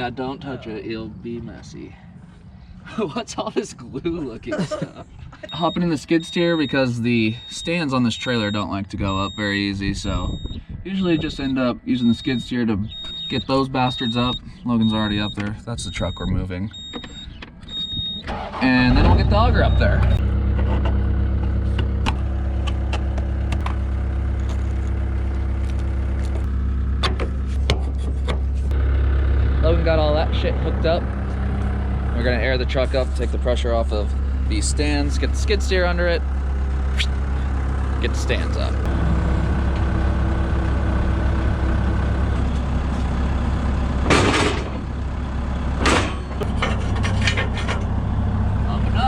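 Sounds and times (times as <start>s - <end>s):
skid steer engine running: 18.3s - 49.0s.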